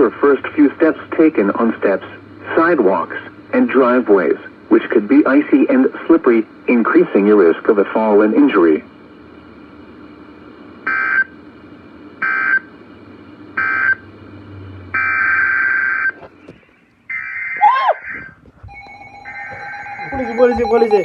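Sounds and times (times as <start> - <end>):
digital data bursts: 18.7 - 21.0.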